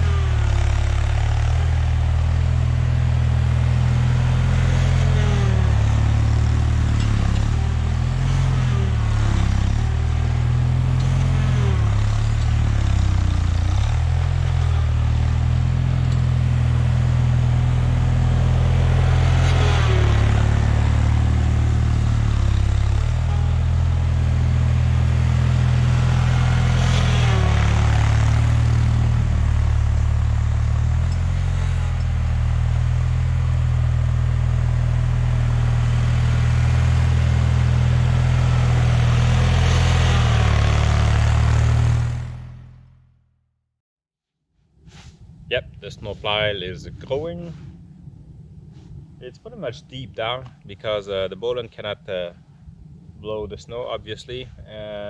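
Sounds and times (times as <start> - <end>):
tractor engine running under load: 0.0 - 42.8.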